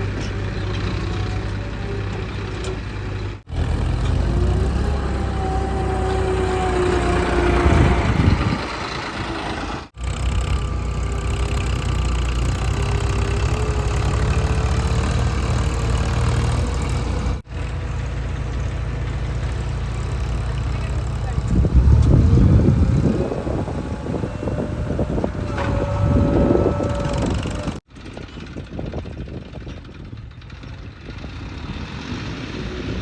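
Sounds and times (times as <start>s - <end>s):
diesel engines running: 0.0s - 33.0s
whine sliding in pitch: 21.4s - 27.8s.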